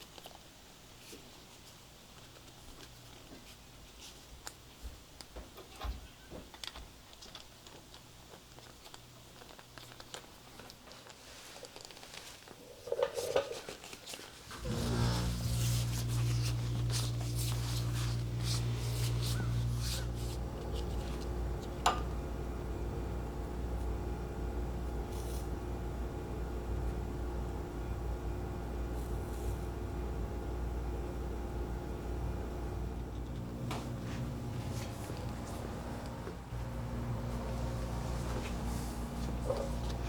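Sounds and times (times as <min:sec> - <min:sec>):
electric machine humming: 0:14.5 - 0:40.0.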